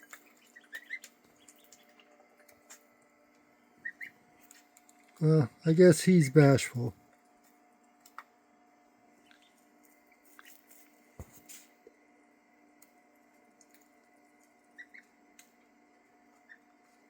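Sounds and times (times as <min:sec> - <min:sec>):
ducklings peeping: 0:00.0 - 0:02.8, 0:03.7 - 0:04.5, 0:09.1 - 0:09.7, 0:14.6 - 0:15.3, 0:16.3 - 0:16.8
faint steady hum: 0:00.0 - 0:17.0.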